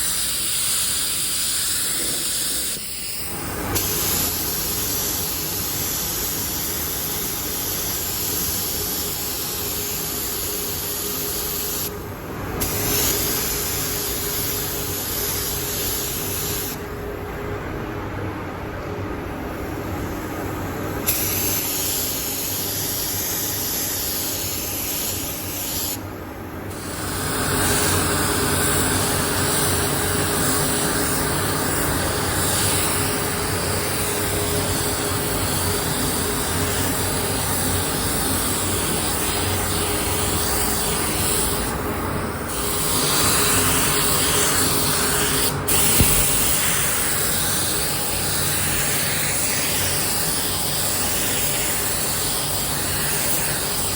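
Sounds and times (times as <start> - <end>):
paint spray gun hissing: 21.1 - 26.0, 26.7 - 41.7, 42.5 - 53.9
sharp click: 45.8 - 46.6.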